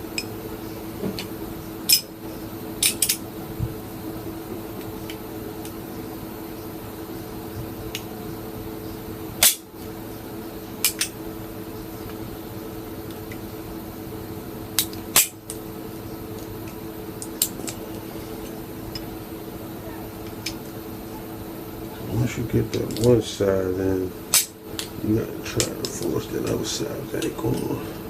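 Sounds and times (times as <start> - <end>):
steady low hum: 0.0 - 28.0
sharp metallic clicks and snaps: 24.3 - 24.9.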